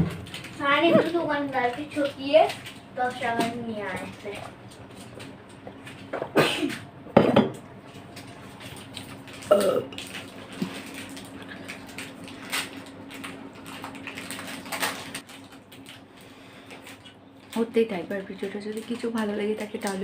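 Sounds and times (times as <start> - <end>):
person hiccuping: 9.5 - 9.9.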